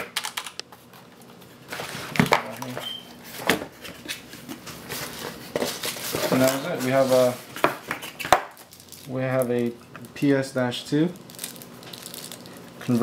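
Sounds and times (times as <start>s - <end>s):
cardboard packaging rustling: 1.4s - 9.4s, 11.2s - 13.0s.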